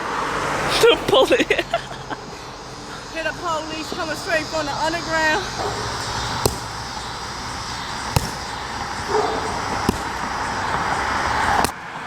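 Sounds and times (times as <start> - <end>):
background hiss: 0.6 - 11.7
sharp knocks: 6.4 - 6.8, 8.1 - 10.4.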